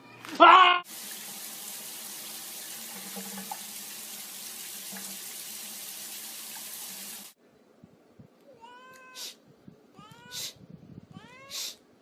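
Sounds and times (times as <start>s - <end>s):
running water rushing: 0.9s - 7.4s.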